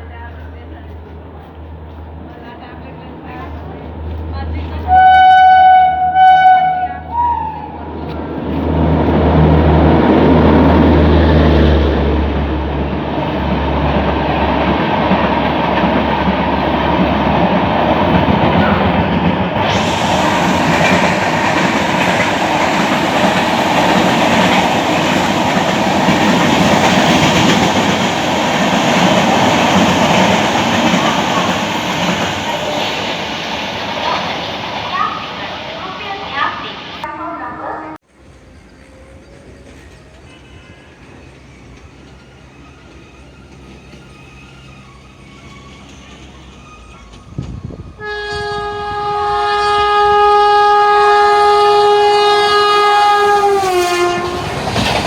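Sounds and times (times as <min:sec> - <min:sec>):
train coaches rattling over track: 0:00.0 - 0:55.0
locomotive horn blasts: 0:04.9 - 0:07.8, 0:48.0 - 0:54.6.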